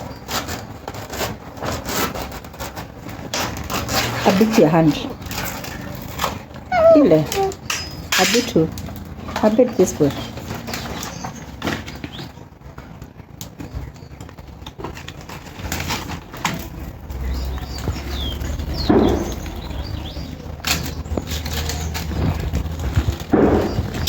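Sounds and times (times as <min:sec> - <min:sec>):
birds chirping: 0:04.3 - 0:12.6, 0:16.8 - 0:24.0.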